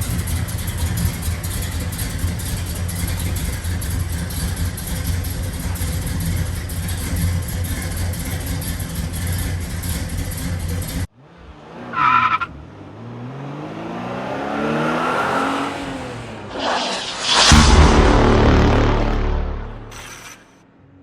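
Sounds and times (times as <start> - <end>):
car engine running: 0.0 - 11.8, 15.2 - 20.1
engine revving: 0.0 - 20.3
tire squeal: 11.8 - 12.6, 14.7 - 17.6
loud burst of noise: 16.5 - 20.5.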